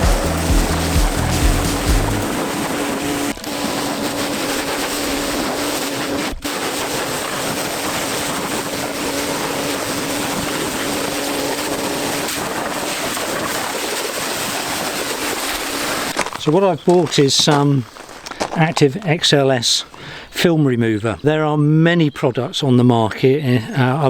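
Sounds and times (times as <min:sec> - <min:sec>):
high-pressure water jet hiss: 0:00.0 - 0:16.2
pressure washer motor hum: 0:00.0 - 0:16.2.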